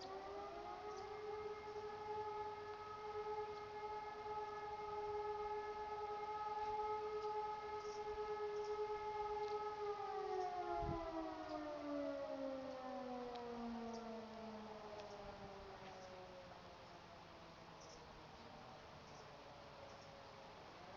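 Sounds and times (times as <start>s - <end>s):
electromechanical siren: 0.0s - 16.8s.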